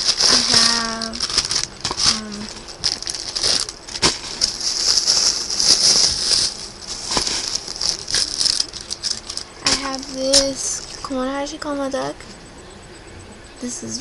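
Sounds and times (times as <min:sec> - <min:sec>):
plastic packaging crinkling: 0:00.0 - 0:11.1.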